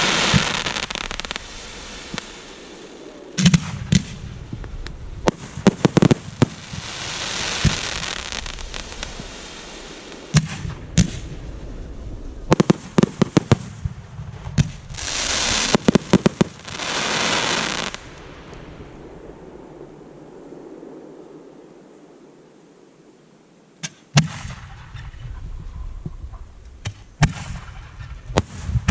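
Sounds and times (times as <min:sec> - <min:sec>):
fireworks hissing: 0:00.0 - 0:13.5, 0:14.6 - 0:18.7.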